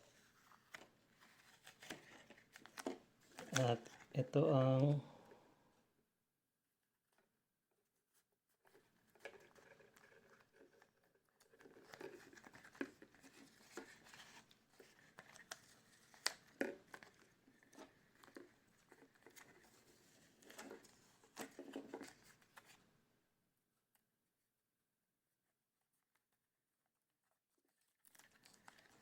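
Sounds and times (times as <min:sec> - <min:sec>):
paper rustling and crinkling: 0:00.0 - 0:04.8, 0:08.1 - 0:22.9, 0:27.2 - 0:29.0.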